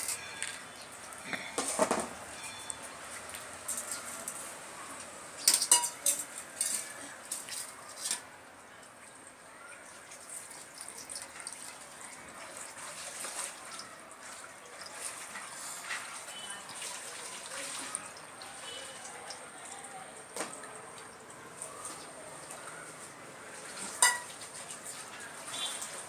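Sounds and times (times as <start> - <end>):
spoon clinking against bowl: 5.4 - 6.9, 24.0 - 24.3.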